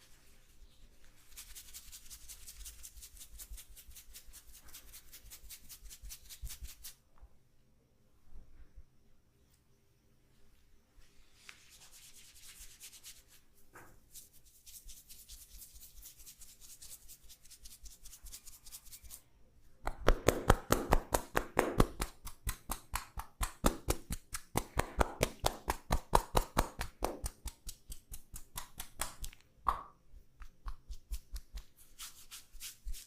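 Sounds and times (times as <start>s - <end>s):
hands rubbing over skin: 0.0s - 7.0s, 11.1s - 19.2s, 20.4s - 29.4s, 30.4s - 33.0s
fast hand taps: 19.8s - 31.7s.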